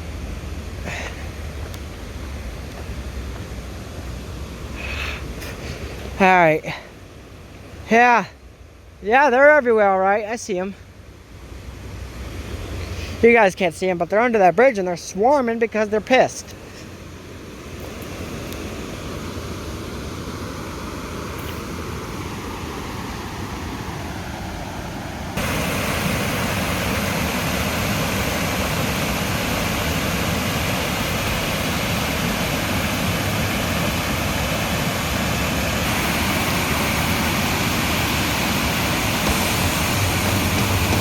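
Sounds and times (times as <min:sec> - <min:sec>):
water rushing over waterfall: 0:17.6 - 0:41.0.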